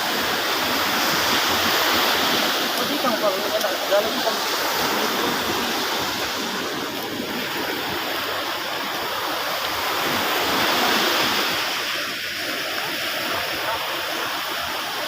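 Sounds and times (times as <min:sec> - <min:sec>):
sea surf washing on beach: 0:00.0 - 0:15.0.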